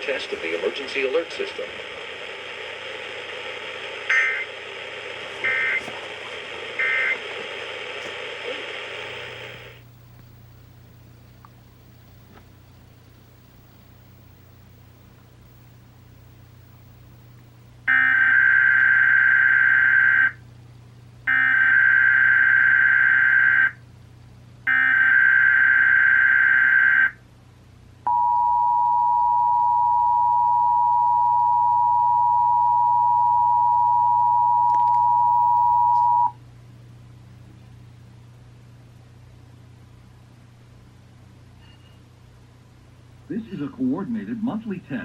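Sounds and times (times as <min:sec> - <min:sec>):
buzzy digital data screech: 0:04.1 - 0:04.5, 0:05.4 - 0:05.9, 0:06.8 - 0:07.2
two-tone attention signal: 0:28.1 - 0:36.4.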